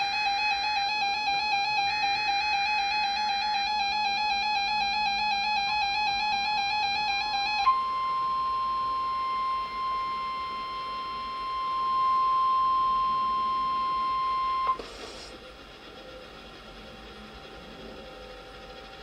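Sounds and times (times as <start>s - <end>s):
steady high alarm beep: 0.0s - 14.8s.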